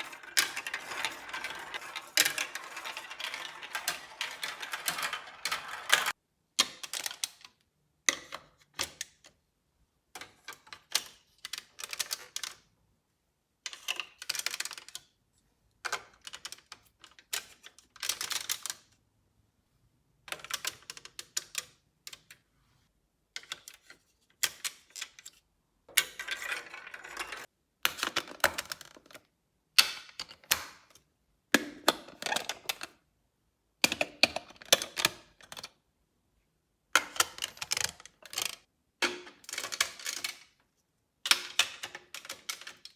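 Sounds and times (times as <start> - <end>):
balls rattling through marble run: 0.0 - 6.2, 26.0 - 27.5.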